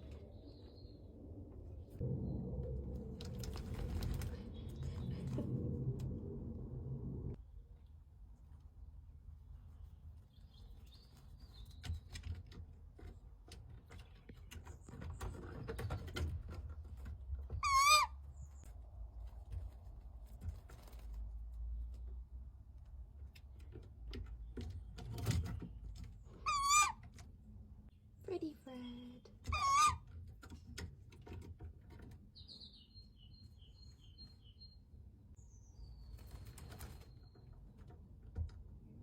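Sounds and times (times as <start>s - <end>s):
owl wavering calls: 17.6s - 18.1s, 26.4s - 27.0s, 29.5s - 30.0s.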